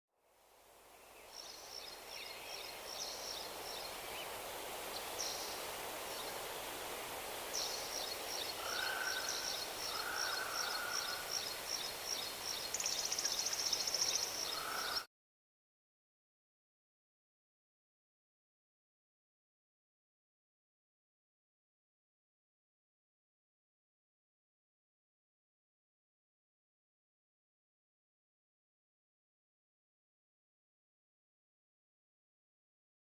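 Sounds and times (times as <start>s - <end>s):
background hiss: 0.2s - 15.1s
small birds chirping: 1.1s - 15.1s.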